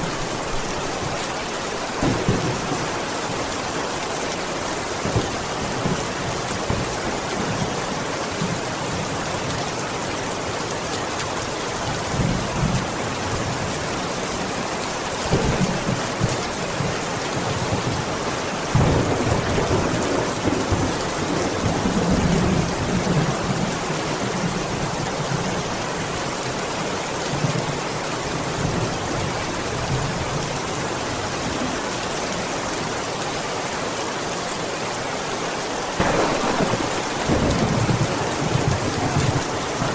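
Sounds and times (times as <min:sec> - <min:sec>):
heavy rain on a window: 0:00.0 - 0:39.9
rolling thunder: 0:02.0 - 0:03.6, 0:18.7 - 0:23.8, 0:36.0 - 0:39.9.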